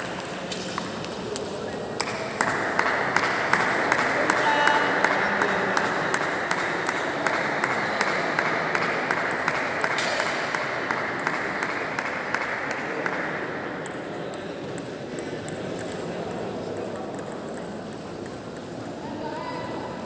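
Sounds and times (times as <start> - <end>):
murmur of crowd: 0.0 - 20.0
table tennis ball clicking: 13.8 - 20.0.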